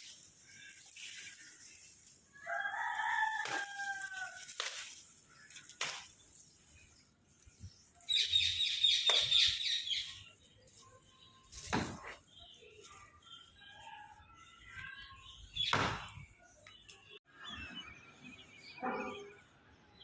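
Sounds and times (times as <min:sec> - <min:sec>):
rooster crowing: 0:02.4 - 0:04.4.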